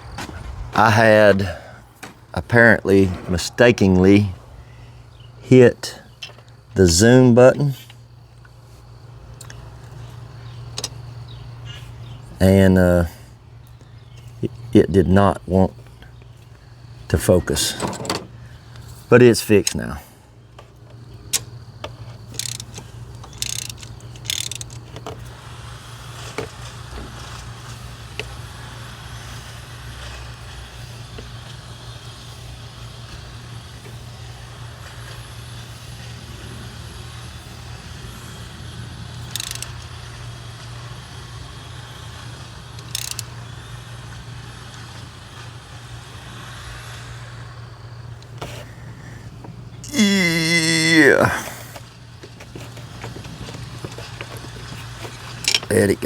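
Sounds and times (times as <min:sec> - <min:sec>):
steady low hum: 0:00.0 - 0:56.0
hand tools clicking and scraping: 0:10.7 - 0:11.1, 0:20.6 - 0:38.5, 0:39.1 - 0:45.6, 0:48.1 - 0:56.0.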